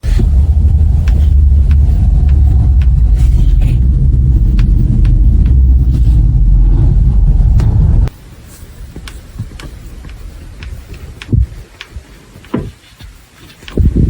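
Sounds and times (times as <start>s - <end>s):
road rumble inside minivan: 0.0s - 8.2s, 8.9s - 11.6s.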